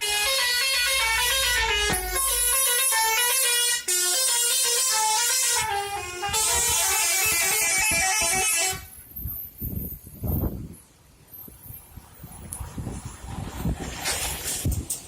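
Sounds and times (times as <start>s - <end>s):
low rumbling: 0.0s - 3.2s
musical air horn tune: 0.0s - 8.9s.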